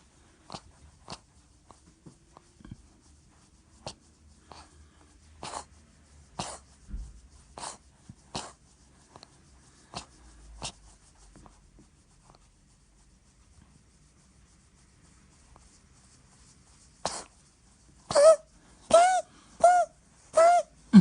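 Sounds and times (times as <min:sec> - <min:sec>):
cat sneezing: 0:05.4 - 0:08.7, 0:09.9 - 0:10.8, 0:17.0 - 0:17.4, 0:18.0 - 0:21.0.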